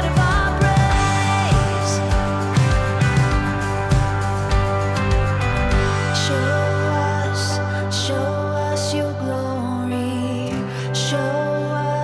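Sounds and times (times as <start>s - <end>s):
guitar and keyboard chords: 0.0s - 12.0s
drum beat: 0.2s - 5.9s.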